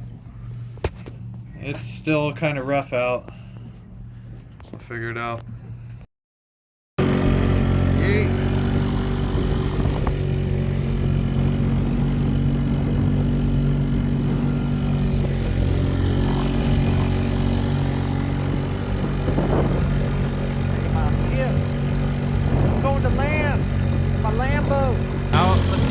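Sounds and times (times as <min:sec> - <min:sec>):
small outboard motor running: 0:07.0 - 0:25.9.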